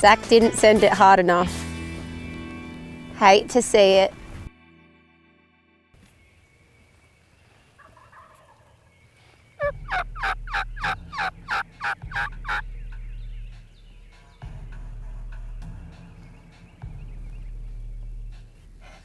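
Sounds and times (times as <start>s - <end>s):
turkey calling: 6.0s - 14.6s.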